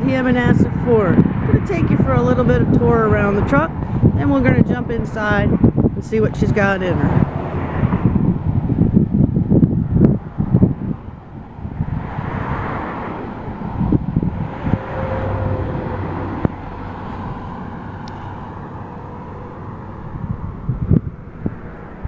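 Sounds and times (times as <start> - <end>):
traffic rush: 0.0 - 22.0.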